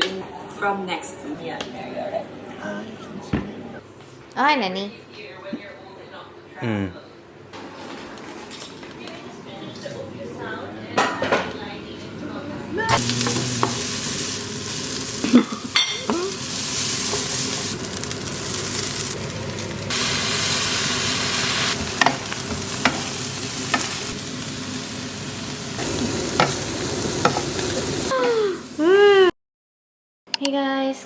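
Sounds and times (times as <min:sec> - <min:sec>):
chicken sizzling in a pan: 0:12.9 - 0:28.2.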